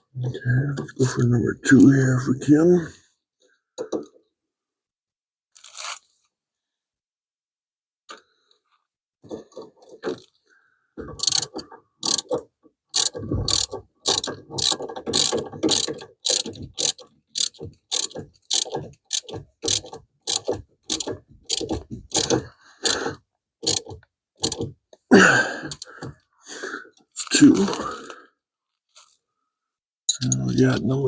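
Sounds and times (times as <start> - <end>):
ratchet wrench clicking: 11.2 - 12.3, 12.9 - 23.0, 23.6 - 24.7.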